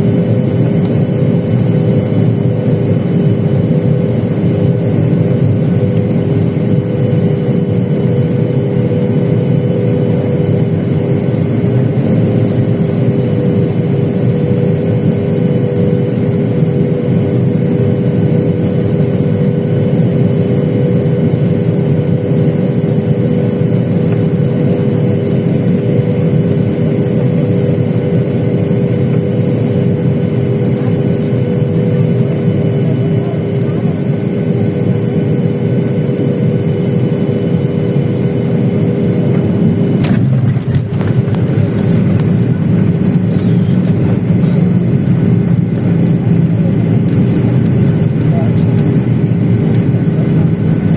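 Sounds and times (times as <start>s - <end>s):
jet engine roar in cabin: 0.0s - 50.9s
steady hum tones: 0.0s - 50.9s.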